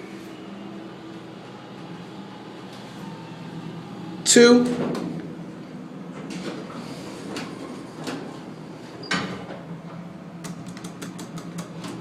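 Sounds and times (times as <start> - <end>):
elevator hum: 0.0 - 12.0
mechanical clicks and knocks: 10.4 - 12.0.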